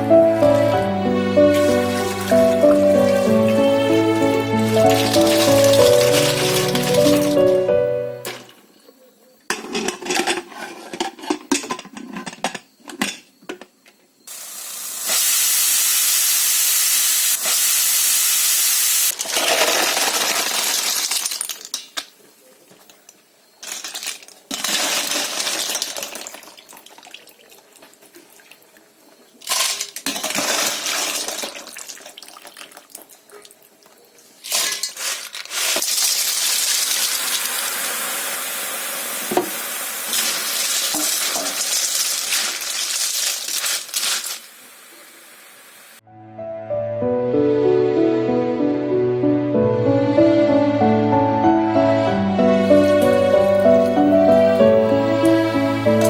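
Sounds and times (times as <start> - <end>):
cooking hiss: 0.0 - 7.7, 14.3 - 22.6, 34.0 - 46.0, 52.7 - 56.0
pots and utensils clinking: 4.6 - 8.6, 9.5 - 13.7, 23.6 - 26.5, 34.4 - 37.5, 39.3 - 44.5, 52.7 - 56.0.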